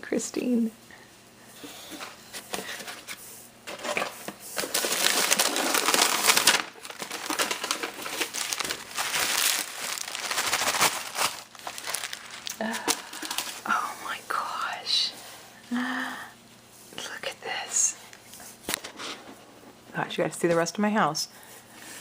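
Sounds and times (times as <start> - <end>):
wrapping paper crinkling: 3.7 - 13.7.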